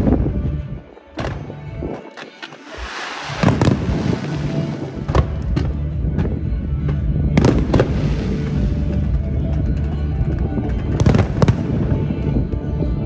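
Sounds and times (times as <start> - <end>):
music over loudspeakers: 0.0 - 13.0
fireworks crackle: 2.7 - 5.8, 7.4 - 9.6, 10.8 - 12.2
distant fireworks bangs: 3.3 - 6.3, 7.4 - 9.6, 10.8 - 12.3.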